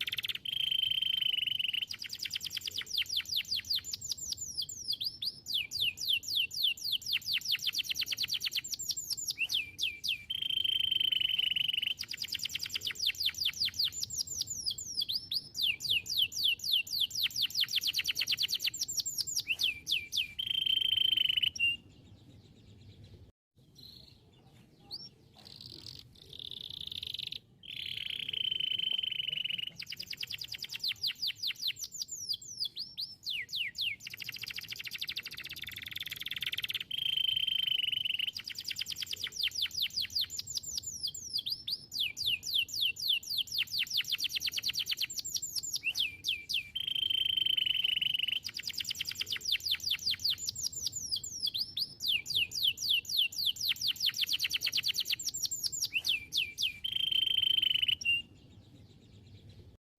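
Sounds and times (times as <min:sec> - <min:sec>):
canary singing trills: 0:00.0 - 0:59.8.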